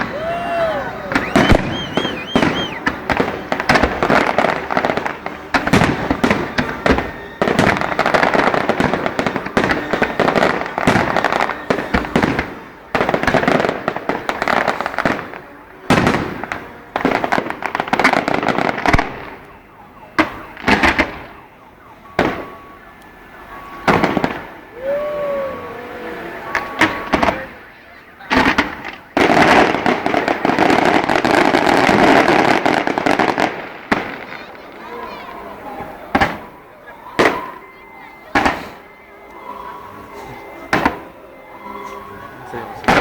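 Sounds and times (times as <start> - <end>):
warbling firework whistles: 0.0 - 3.0, 5.8 - 12.5
fireworks bangs and crackling: 0.0 - 43.0.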